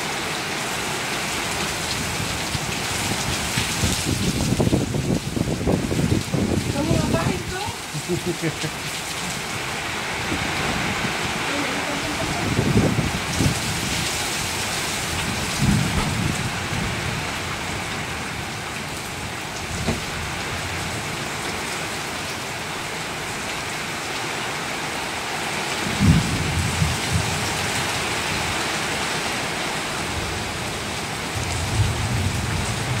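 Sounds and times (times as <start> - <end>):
heavy rain hissing: 0.0 - 33.0
low rumbles of wind or thunder: 1.8 - 7.6, 10.2 - 21.1, 25.8 - 28.5, 30.0 - 33.0.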